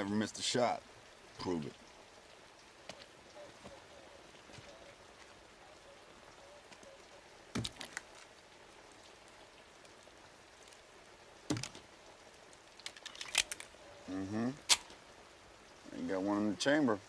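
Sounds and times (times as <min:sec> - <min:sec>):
faint rain-like hiss: 0:00.0 - 0:17.0
sharp metallic gun clicks: 0:12.8 - 0:13.7.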